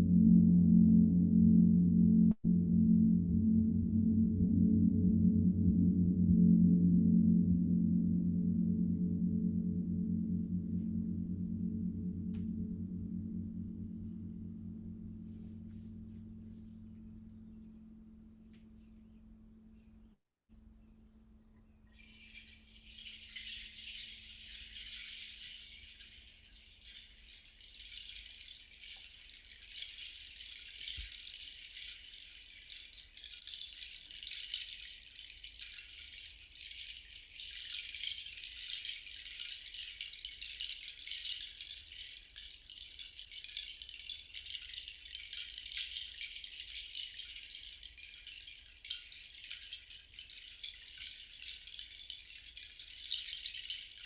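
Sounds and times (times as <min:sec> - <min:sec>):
faint low tone: 0:00.0 - 0:20.0
hand rattle shaken: 0:22.0 - 0:54.0.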